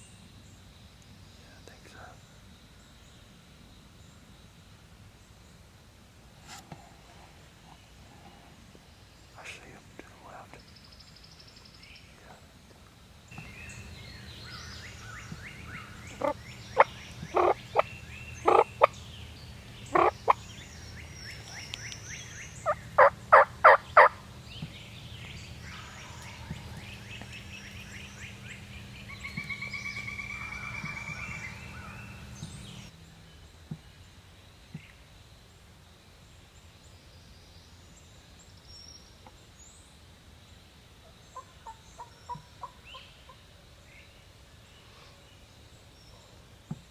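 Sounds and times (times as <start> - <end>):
small birds singing: 0.0 - 5.8, 6.5 - 35.3
low hum: 13.4 - 32.9
turkey gobbling: 14.8 - 19.1, 19.8 - 20.6, 21.5 - 24.3, 25.7 - 32.5.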